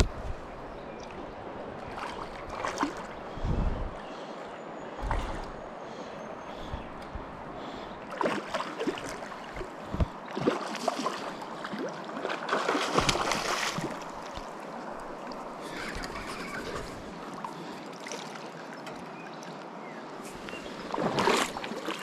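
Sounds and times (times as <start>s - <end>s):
river water running: 0.0s - 22.0s
water splashing: 1.9s - 3.1s, 7.7s - 18.7s, 20.9s - 22.0s.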